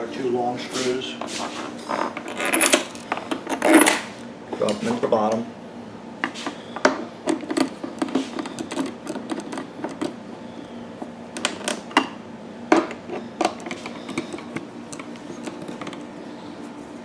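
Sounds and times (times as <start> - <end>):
screws and plastic case clicking: 7.2 - 10.2, 13.1 - 16.1.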